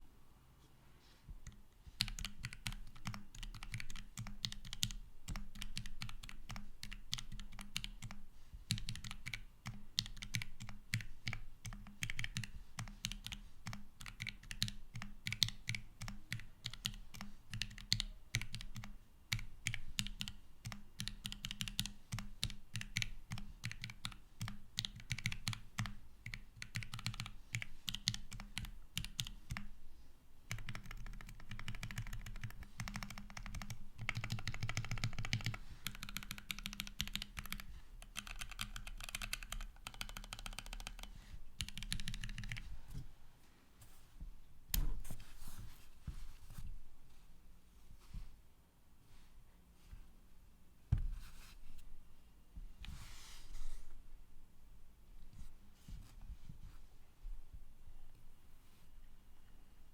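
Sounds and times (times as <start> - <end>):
mechanical keyboard typing: 2.0 - 29.7, 30.5 - 42.6.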